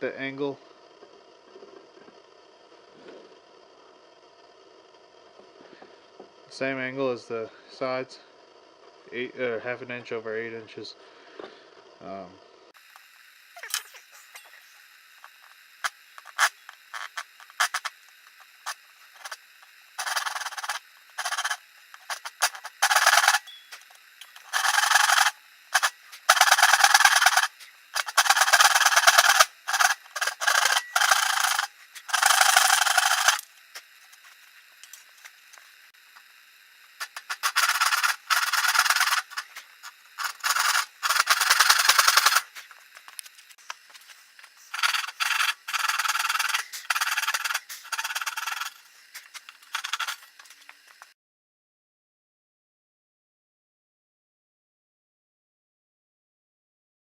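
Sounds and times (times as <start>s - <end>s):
hand saw cutting wood: 20.0s - 23.4s, 24.4s - 33.5s, 37.0s - 39.6s, 40.2s - 42.6s, 44.7s - 48.8s.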